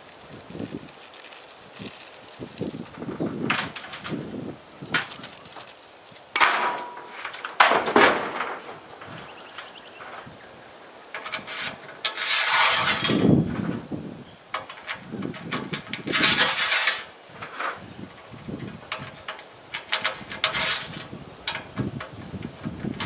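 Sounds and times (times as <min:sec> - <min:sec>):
scraping rub: 0:11.2 - 0:13.8, 0:14.7 - 0:18.4, 0:19.0 - 0:21.6.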